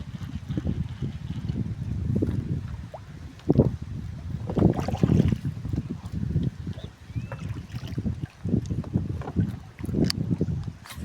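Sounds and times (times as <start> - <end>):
water sloshing against kayak: 0.0 - 11.0
wind rumbling on microphone: 0.0 - 11.0
faint short whistle: 7.1 - 7.5.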